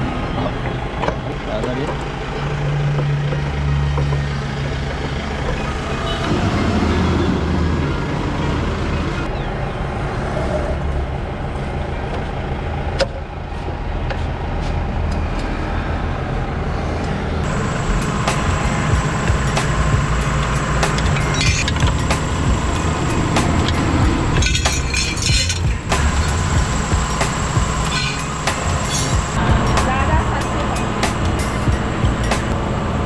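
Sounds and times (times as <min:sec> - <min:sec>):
vehicle engine running: 0:17.4 - 0:33.0.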